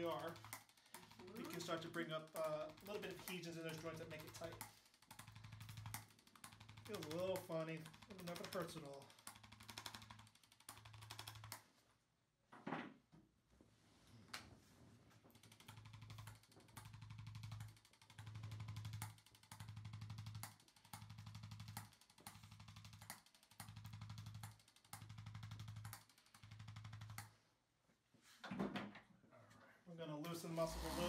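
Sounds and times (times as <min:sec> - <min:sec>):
adjusting instrument buzzing taps: 0:00.0 - 0:11.6, 0:15.4 - 0:27.3.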